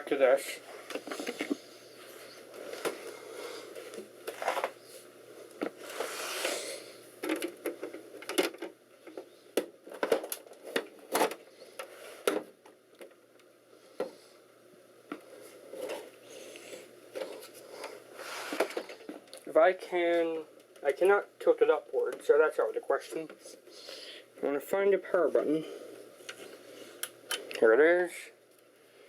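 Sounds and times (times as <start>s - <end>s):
objects handled and set down: 0.8s - 1.7s, 2.6s - 4.9s, 7.2s - 13.2s, 17.1s - 19.3s.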